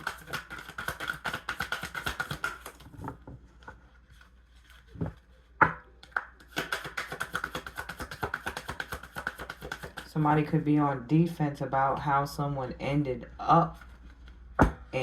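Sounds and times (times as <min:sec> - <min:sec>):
cards tapping: 0:00.0 - 0:03.2, 0:05.6 - 0:10.1
cards being shuffled: 0:00.0 - 0:05.3, 0:06.0 - 0:10.1.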